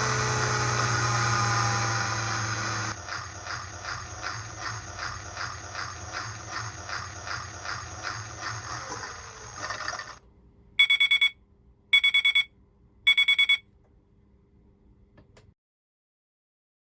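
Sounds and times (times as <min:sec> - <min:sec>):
toy spin-cycle sound effect: 0:02.9 - 0:10.2.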